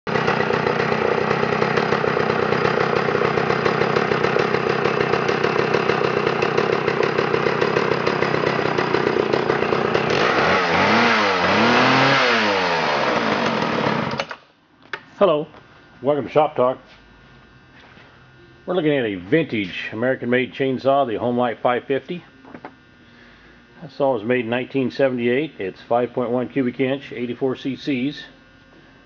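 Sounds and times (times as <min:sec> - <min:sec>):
chainsaw engine revving: 0:00.1 - 0:14.4.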